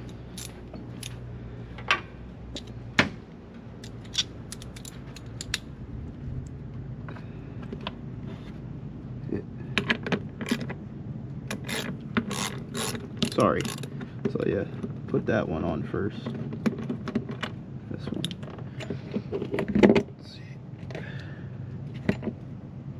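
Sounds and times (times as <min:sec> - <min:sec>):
metallic clicks and clinks of tools: 0:00.0 - 0:01.2, 0:03.8 - 0:05.7, 0:11.6 - 0:13.9
low steady hum: 0:00.0 - 0:22.9.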